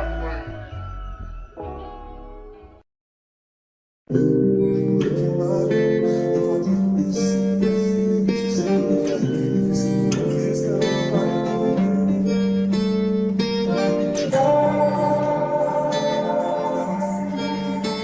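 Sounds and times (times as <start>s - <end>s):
song with acoustic guitar: 4.1s - 18.0s.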